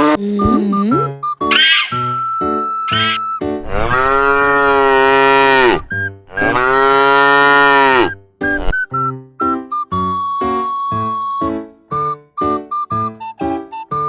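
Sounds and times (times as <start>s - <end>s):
bouncy background music: 0.0s - 4.0s, 7.9s - 14.0s
cow mooing: 2.9s - 8.2s.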